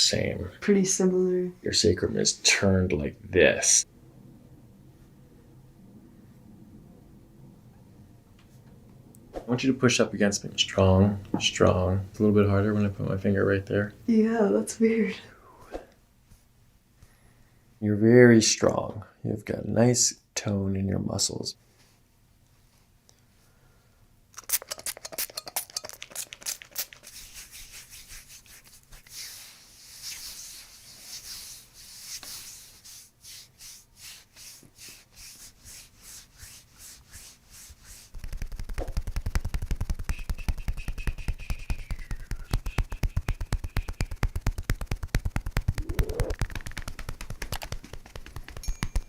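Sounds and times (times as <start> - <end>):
rubbing and soft clicks: 24.6 - 49.0
percussion massager pounding and whining: 38.2 - 49.0.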